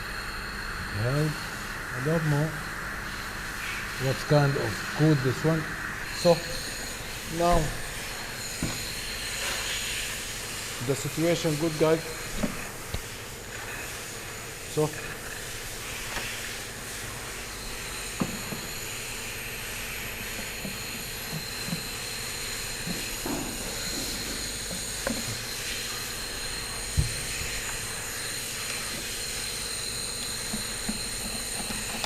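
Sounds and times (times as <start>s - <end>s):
faint high whining tones: 0.0s - 32.0s
steady mechanical hiss: 0.0s - 32.0s.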